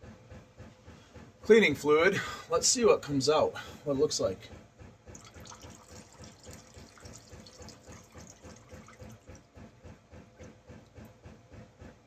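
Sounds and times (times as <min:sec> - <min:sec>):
fuel glugging and splashing: 0:03.6 - 0:11.8.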